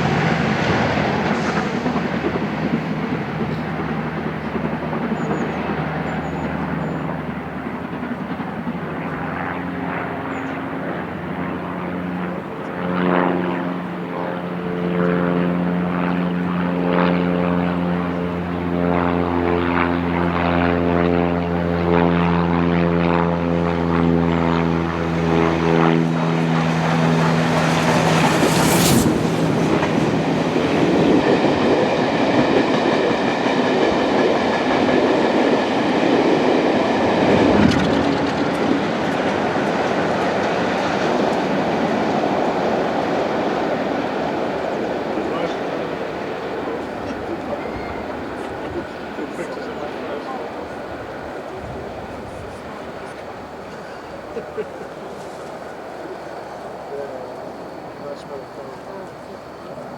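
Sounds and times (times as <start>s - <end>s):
train rushing past: 0.0s - 9.0s, 23.3s - 59.8s
propeller aircraft droning: 0.0s - 59.9s
sharp crack: 26.1s - 31.4s.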